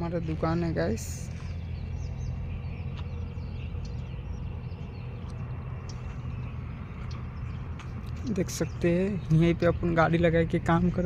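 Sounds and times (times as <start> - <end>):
small birds chirping: 0.0 - 11.0
steady low rumble: 0.0 - 11.0.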